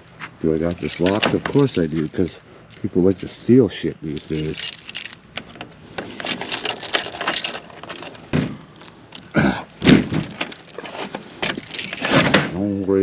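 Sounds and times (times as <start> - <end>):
keys jangling: 0.5 - 5.6, 6.2 - 9.3, 10.1 - 12.2
scrape: 10.8 - 11.2.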